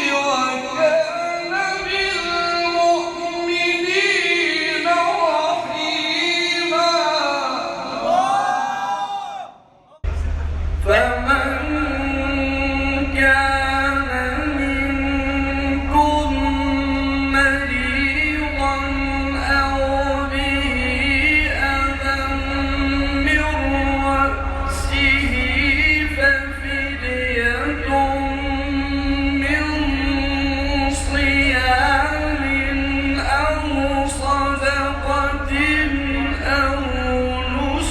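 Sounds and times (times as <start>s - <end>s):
man reciting melodically: 0.0s - 8.2s, 10.8s - 37.9s
steady held drone: 10.0s - 37.9s.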